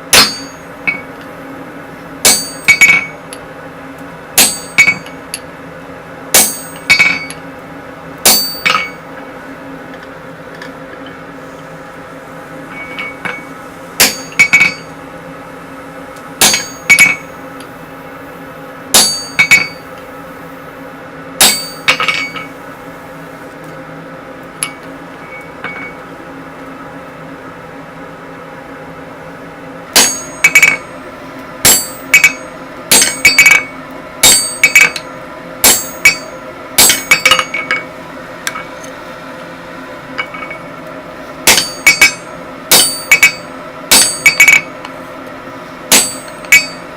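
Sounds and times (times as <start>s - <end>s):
steady background hum: 0.0s - 46.9s
hammer striking steel on anvil: 0.1s - 1.3s, 2.2s - 3.2s, 4.4s - 5.4s, 6.3s - 7.4s, 8.2s - 9.1s, 12.7s - 14.9s, 16.4s - 17.4s, 18.9s - 19.9s, 21.4s - 22.6s, 29.9s - 31.0s, 31.6s - 37.9s, 40.2s - 40.7s, 41.4s - 44.8s, 45.9s - 46.9s.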